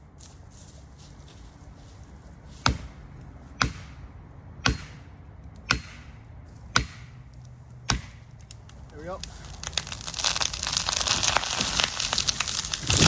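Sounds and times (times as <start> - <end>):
striking tool hitting felling wedge: 2.6 - 3.0, 3.6 - 4.0, 5.7 - 7.2.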